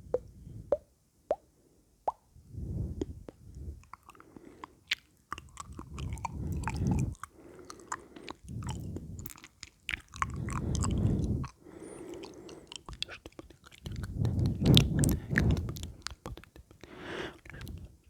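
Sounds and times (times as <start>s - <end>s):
wet mouth clicks and smacks: 3.0s - 17.9s.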